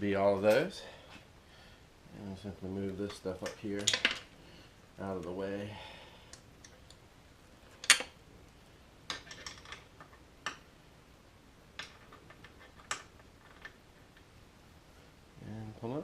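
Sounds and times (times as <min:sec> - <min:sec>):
tools and metal parts clicking: 0:03.1 - 0:04.3, 0:09.1 - 0:10.6.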